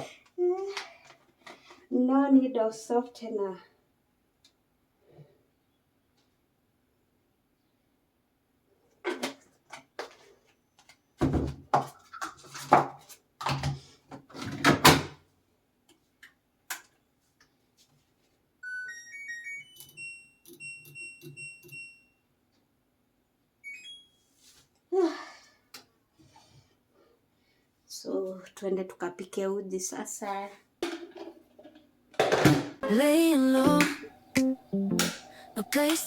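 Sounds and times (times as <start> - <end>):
rising electronic beep melody: 18.6 - 20.8, 33.2 - 35.8.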